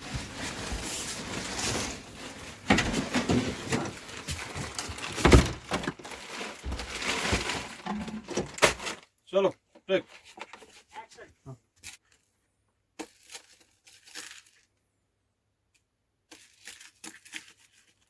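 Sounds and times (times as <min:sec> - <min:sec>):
props clattering: 0:00.0 - 0:09.0
props rustling: 0:00.0 - 0:12.2.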